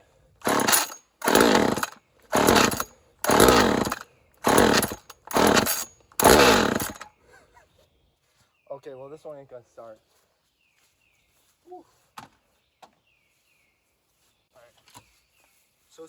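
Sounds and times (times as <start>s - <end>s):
recoil starter pulls: 0.4s - 7.0s
chainsaw engine sputtering: 0.4s - 7.1s.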